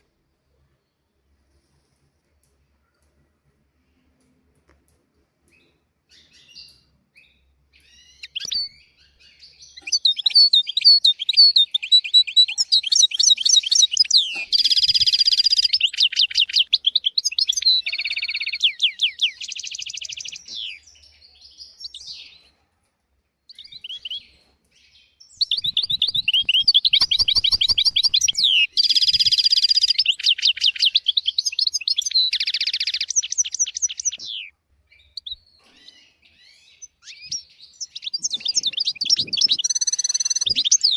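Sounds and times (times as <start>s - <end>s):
goldfinch twittering trills: 25.3s - 34.5s.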